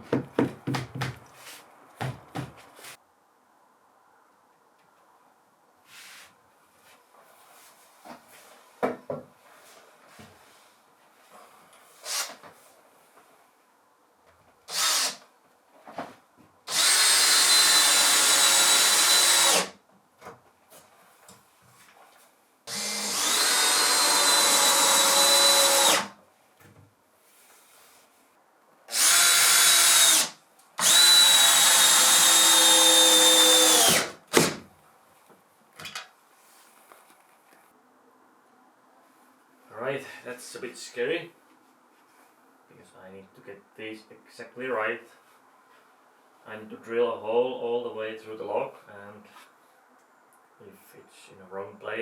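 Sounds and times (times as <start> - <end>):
power drill motor whine: 14.7 - 15.2, 16.7 - 19.7, 22.7 - 26.1, 28.9 - 34.4.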